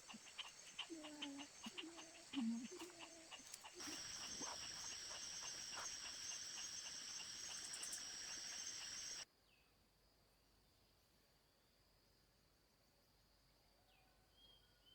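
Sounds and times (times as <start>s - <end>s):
shrill insect drone: 0.0s - 9.2s.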